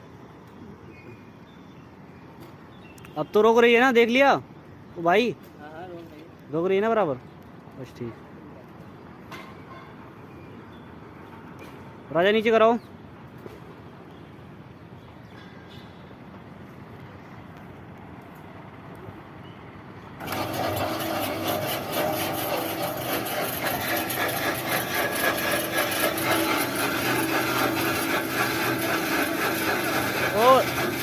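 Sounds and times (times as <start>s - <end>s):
hoist motor hum: 20.2s - 31.0s
winch rattling and grinding: 20.2s - 31.0s.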